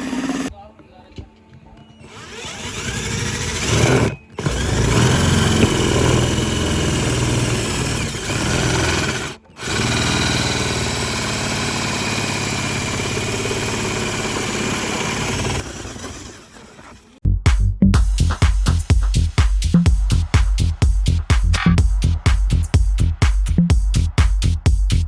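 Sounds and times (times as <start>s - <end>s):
small electric motor whining: 0.0s - 0.5s, 2.0s - 17.2s.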